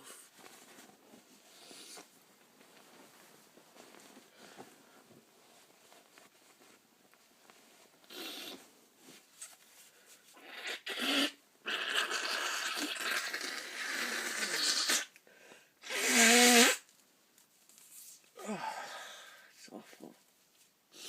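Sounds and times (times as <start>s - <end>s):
person gasping breaths: 18.4s - 19.6s.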